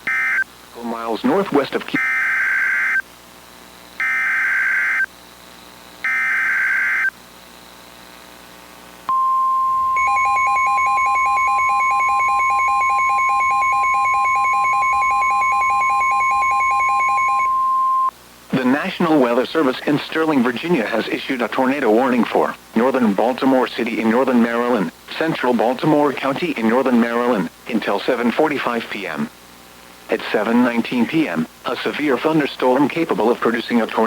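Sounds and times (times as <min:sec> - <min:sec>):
steady warning alarm tone: 0:02.0 - 0:03.0, 0:04.0 - 0:05.1, 0:06.0 - 0:07.1, 0:09.1 - 0:18.1
rapid pulsing beep: 0:09.1 - 0:18.1
warbling data tone bursts: 0:09.1 - 0:18.7.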